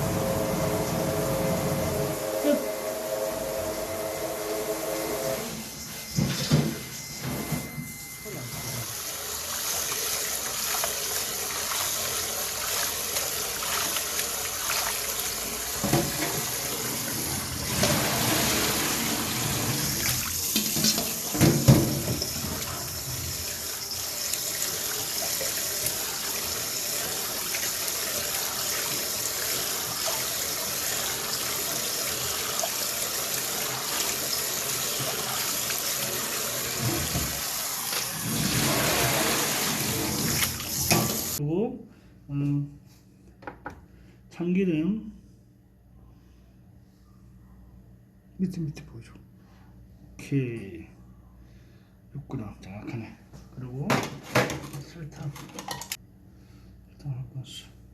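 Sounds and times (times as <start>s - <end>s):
water running from tap into sink: 8.8s - 41.4s
kitchenware clattering: 20.5s - 22.8s, 53.9s - 56.0s.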